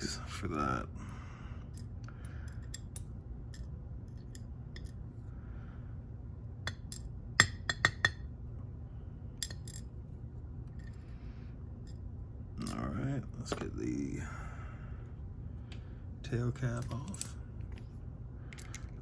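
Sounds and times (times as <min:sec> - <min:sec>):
metallic clicks of lock parts: 0:18.5 - 0:19.0.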